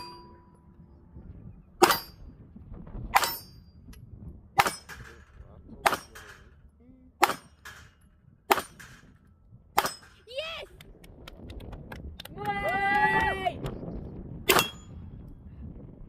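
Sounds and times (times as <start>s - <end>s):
pistol shots: 7.2s - 7.9s, 8.5s - 9.1s.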